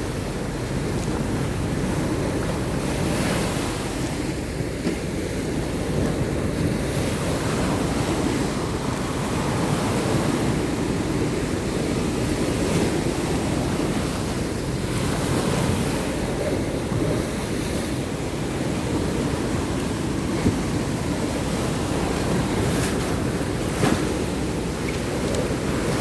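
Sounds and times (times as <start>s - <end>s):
waves washing onto beach: 0.0s - 26.0s
wind buffeting microphone: 0.0s - 26.0s.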